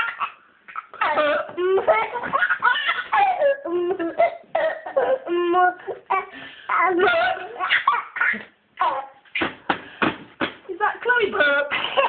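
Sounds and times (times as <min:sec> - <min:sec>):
baby giggling: 0:00.0 - 0:09.6.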